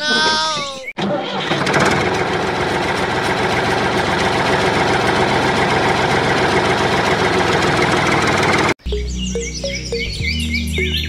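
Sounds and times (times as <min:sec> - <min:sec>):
small motor rattling: 0:01.4 - 0:08.8.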